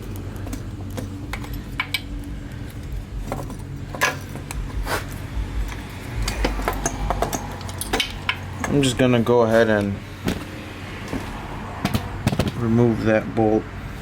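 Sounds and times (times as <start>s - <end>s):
steady low hum: 0.0s - 14.0s
metallic clicks of hand tools: 0.1s - 4.6s, 5.6s - 8.8s.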